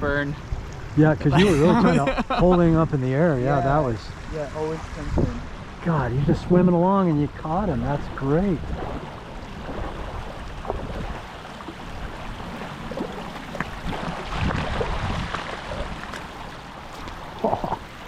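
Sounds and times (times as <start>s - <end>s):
large river rushing: 0.9s - 7.4s
wind on microphone: 4.1s - 6.6s, 7.9s - 16.5s.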